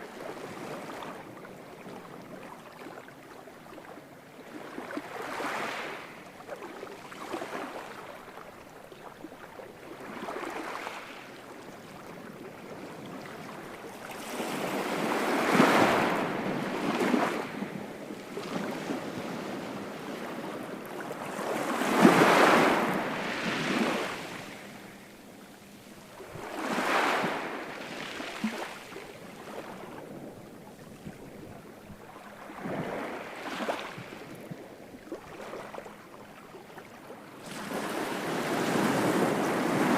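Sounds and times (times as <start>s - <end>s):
ocean waves washing in: 14.2s - 30.5s.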